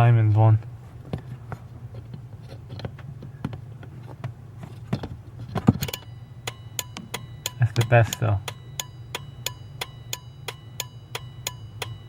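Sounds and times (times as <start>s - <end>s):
steady low hum: 0.0s - 12.0s
turn signal flasher clicking: 5.8s - 12.0s.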